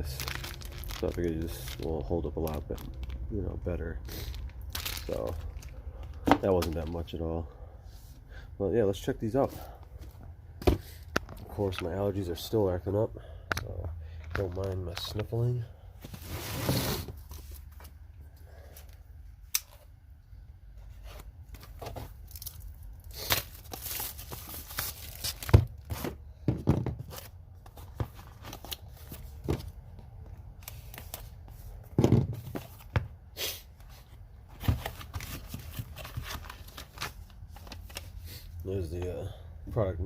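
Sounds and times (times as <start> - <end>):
packaging tearing and crinkling: 0.0 - 3.3, 4.1 - 5.8, 22.1 - 26.0.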